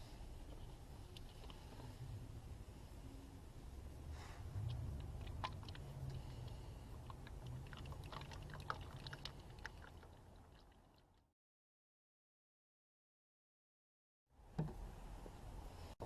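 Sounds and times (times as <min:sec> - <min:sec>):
oil pouring from bottle: 0:04.8 - 0:10.6.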